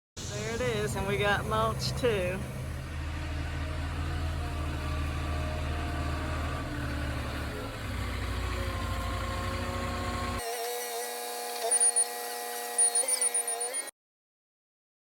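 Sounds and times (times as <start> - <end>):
truck engine idling: 0.2 - 10.4.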